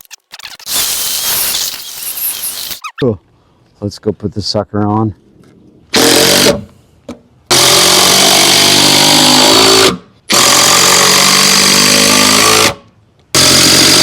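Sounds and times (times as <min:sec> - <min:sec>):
power drill driving fasteners: 0:00.0 - 0:02.8.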